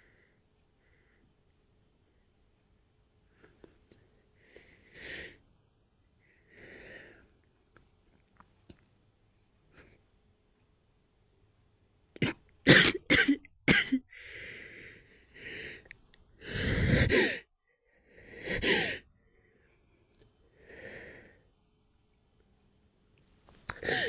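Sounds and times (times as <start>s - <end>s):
woman stifling a sneeze: 16.7s - 17.4s, 23.8s - 24.0s.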